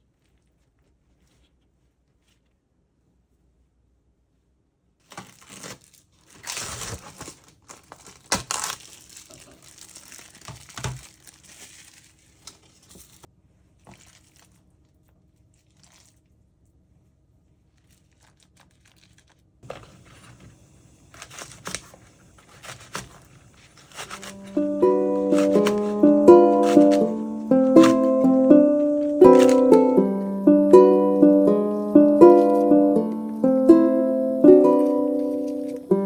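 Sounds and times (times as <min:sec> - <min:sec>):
crinkling and rustling handling: 0:00.0 - 0:02.7, 0:05.0 - 0:30.2.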